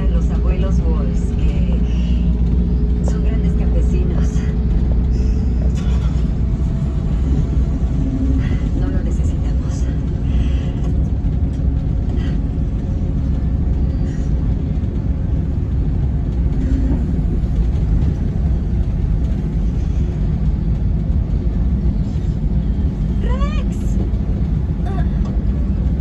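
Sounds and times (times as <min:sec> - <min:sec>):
coach engine rumbling: 0:00.0 - 0:26.0.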